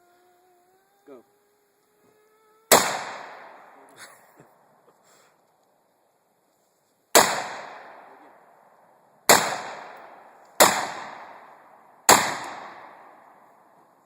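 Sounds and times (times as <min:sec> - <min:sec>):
rifle shots: 0:02.7 - 0:03.8, 0:07.1 - 0:08.2, 0:09.3 - 0:13.3.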